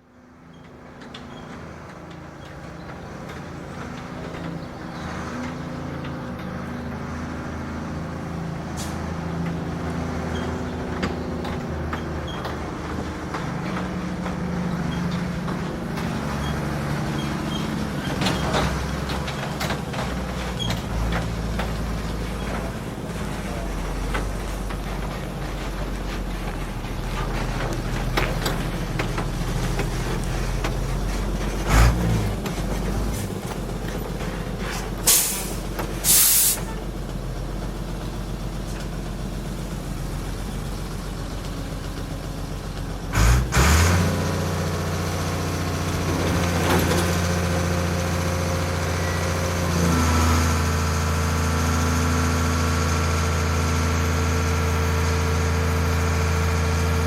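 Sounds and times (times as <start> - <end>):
diesel lorry engine running: 0.0 - 57.0
air brake hisses: 8.8 - 9.1, 34.7 - 36.8.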